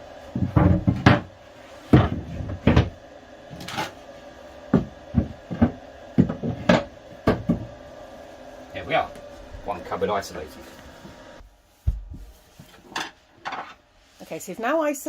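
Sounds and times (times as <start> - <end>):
cupboard panels knocking and clunking: 1.9 - 2.9.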